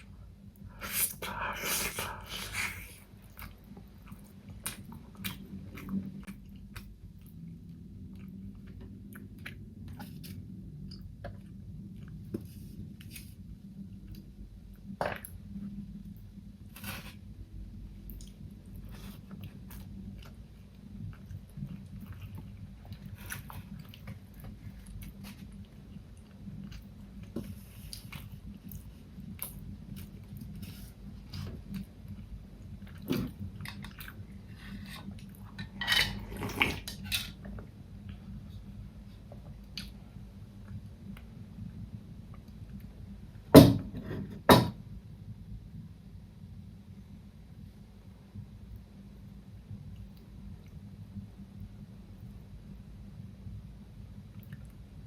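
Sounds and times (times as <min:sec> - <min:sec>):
chewing food: 0:02.4 - 0:12.3, 0:18.1 - 0:35.6.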